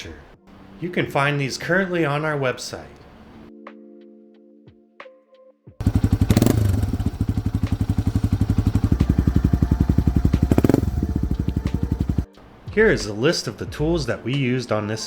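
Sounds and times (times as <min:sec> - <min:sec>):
motorcycle engine idling: 0:05.8 - 0:12.3.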